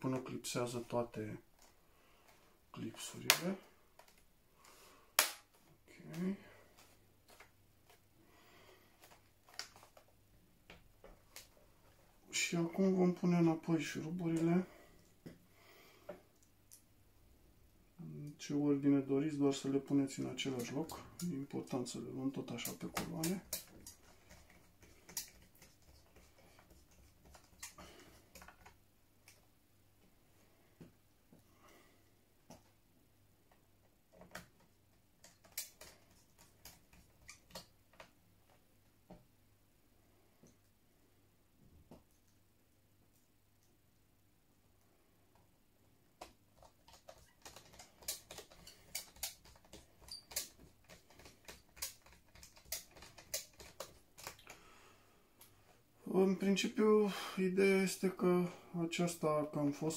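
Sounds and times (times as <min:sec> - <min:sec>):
small screws clicking: 0:46.9 - 0:54.5.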